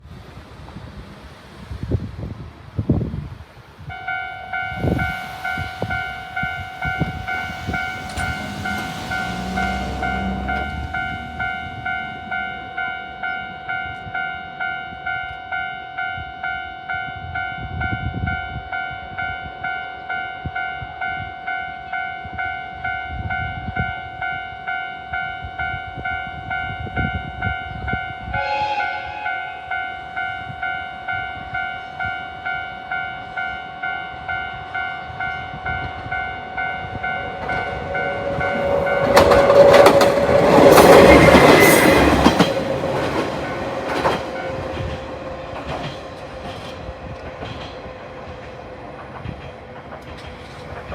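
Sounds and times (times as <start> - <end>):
train passing: 0.0 - 50.9.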